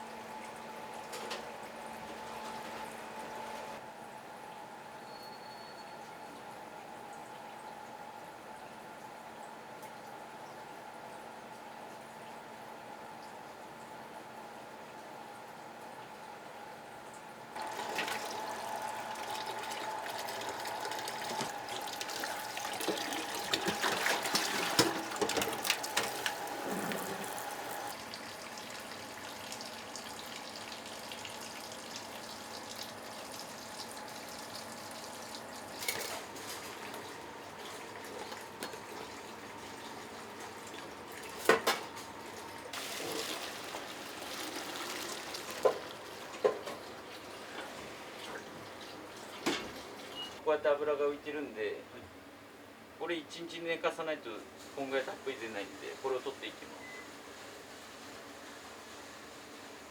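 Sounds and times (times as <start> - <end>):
kitchen utensils clattering: 17.6 - 27.7, 49.3 - 50.3
water running from a tap: 17.6 - 41.4, 42.8 - 50.2.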